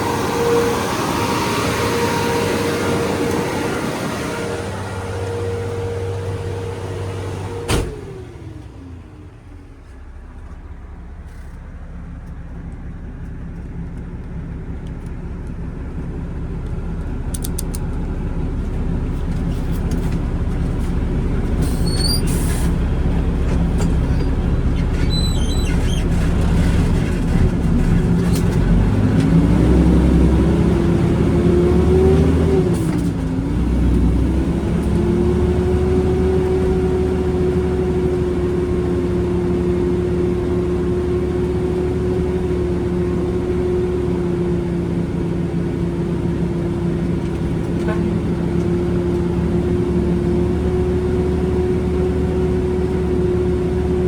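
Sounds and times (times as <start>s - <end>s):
diesel truck engine revving: 0.0s - 12.4s, 14.6s - 54.0s
sharp click: 17.3s - 17.9s.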